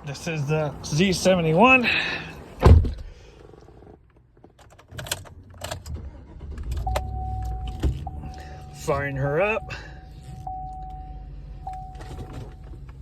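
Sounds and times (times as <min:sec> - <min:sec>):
loud thump: 0:02.6 - 0:03.0.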